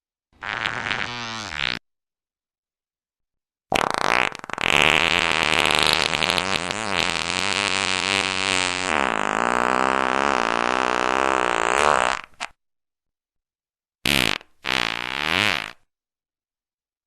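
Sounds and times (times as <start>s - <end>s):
fart sound effects: 0.4s - 1.8s, 3.7s - 12.6s, 14.0s - 15.9s.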